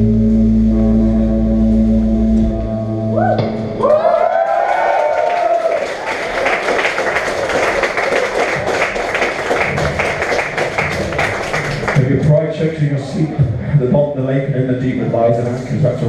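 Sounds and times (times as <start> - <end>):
sustained guitar chord: 0.0 - 3.8
live hardcore band playing: 0.0 - 4.0
bending guitar notes: 0.0 - 4.3.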